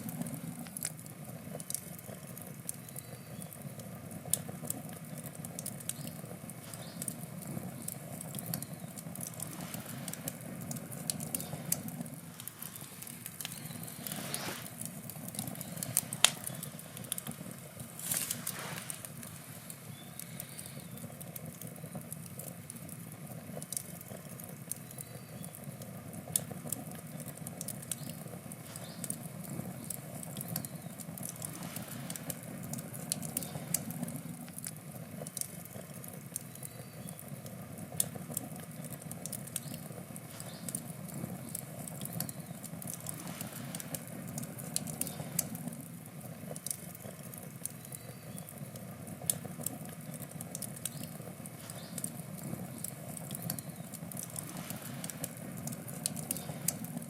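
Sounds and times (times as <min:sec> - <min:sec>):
campfire crackling and popping: 0:00.0 - 0:57.0
fire hissing: 0:00.0 - 0:57.0.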